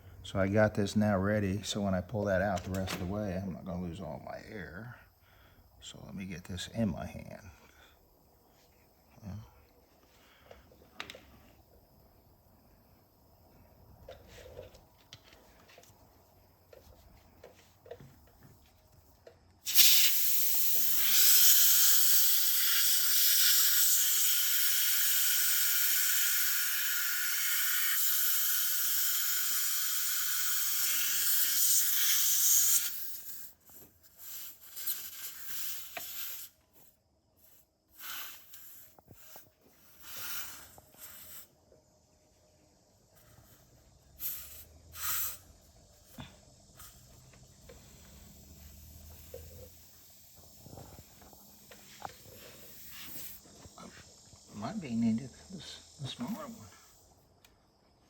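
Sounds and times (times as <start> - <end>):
air hissing from tire: 19.6 - 42.1, 43.1 - 57.3.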